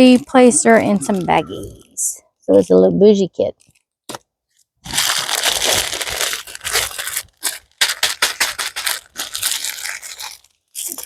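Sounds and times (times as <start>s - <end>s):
plastic packaging crinkling: 3.6s - 11.0s.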